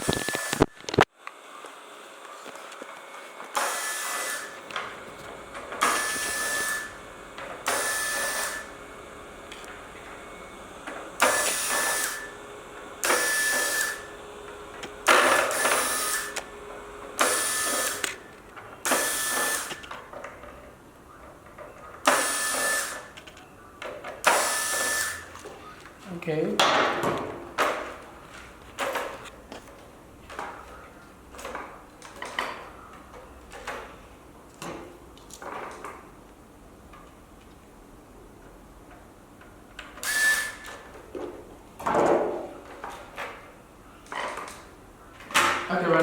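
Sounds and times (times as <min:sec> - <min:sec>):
electric screwdriver whining: 0:00.0 - 0:01.1, 0:03.5 - 0:20.0, 0:22.0 - 0:23.4, 0:24.2 - 0:25.5, 0:40.0 - 0:40.9.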